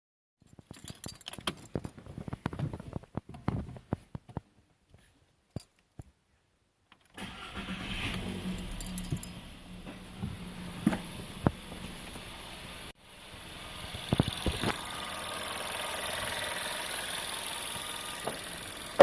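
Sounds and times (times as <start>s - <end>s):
car engine starting and running: 7.2s - 19.0s.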